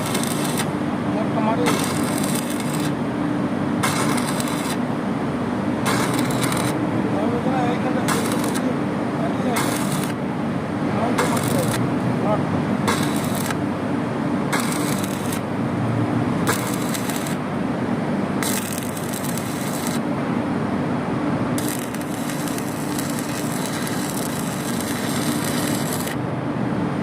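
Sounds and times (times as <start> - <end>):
welding arc crackling: 0.0 - 0.7, 1.5 - 3.0, 3.8 - 4.8, 5.8 - 6.8, 7.9 - 8.7, 9.4 - 10.2, 11.1 - 11.9, 12.8 - 13.6, 14.5 - 15.5, 16.4 - 17.4, 18.4 - 20.0, 21.6 - 26.2
steady low hum: 0.0 - 27.0.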